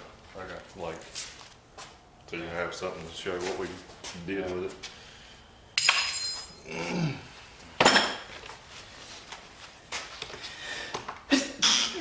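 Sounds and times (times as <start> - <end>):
sharp ringing metal clanks: 5.8 - 6.6.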